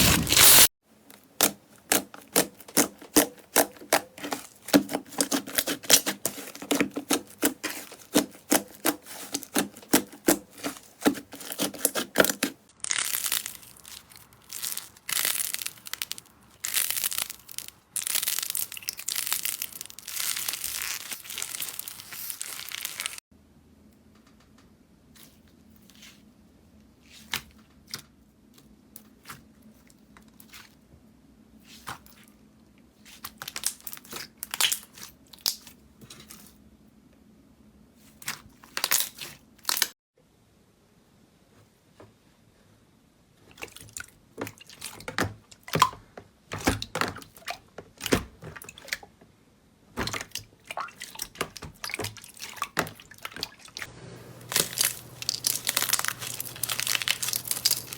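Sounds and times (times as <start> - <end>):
slime squishing and popping: 1.4 - 23.2, 54.5 - 57.9.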